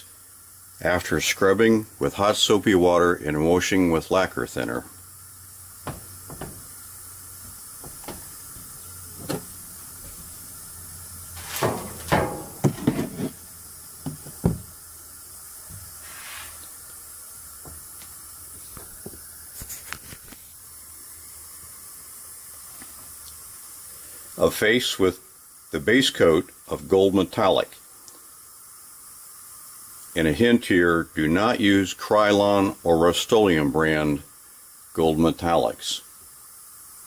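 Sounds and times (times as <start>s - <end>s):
background hiss: 0.0s - 37.0s
light knocks and clicks: 5.8s - 6.7s, 7.8s - 10.2s.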